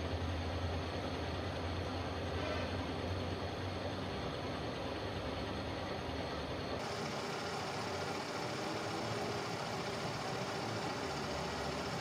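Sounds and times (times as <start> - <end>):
machine humming: 6.8 - 12.0.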